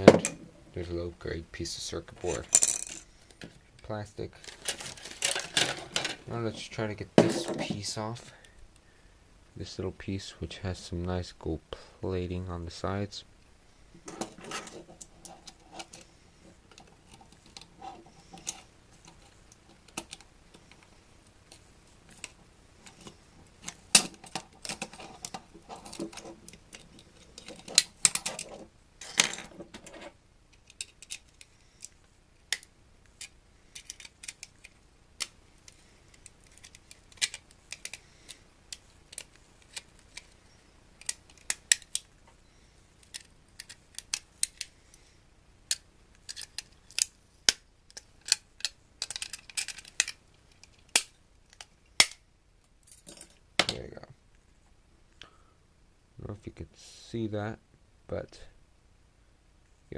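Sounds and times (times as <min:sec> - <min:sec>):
rattling and scraping: 0:14.0 - 0:19.4, 0:22.1 - 0:30.2
plastic parts clicking and snapping: 0:16.7 - 0:20.9, 0:21.5 - 0:29.9, 0:30.5 - 0:40.4, 0:41.0 - 0:42.1, 0:43.0 - 0:44.7, 0:45.7 - 0:52.2.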